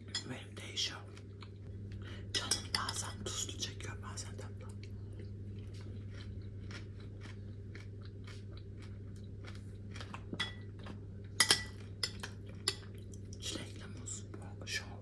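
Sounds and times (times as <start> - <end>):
chewing crunchy fruit: 4.2 - 14.4.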